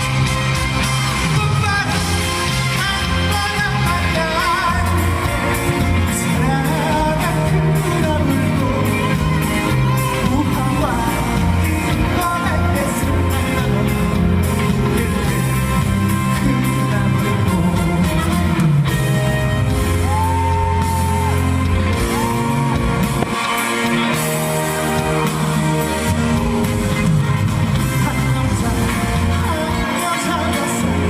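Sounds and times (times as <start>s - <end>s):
backing track of bass and drums: 0.0s - 29.8s
man singing through a pa: 1.3s - 9.2s.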